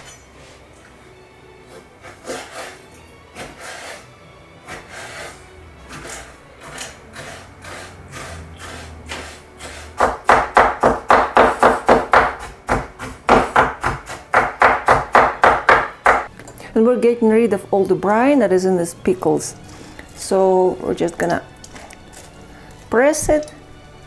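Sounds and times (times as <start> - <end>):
knife chopping on cutting board: 1.7 - 2.8, 5.9 - 16.3.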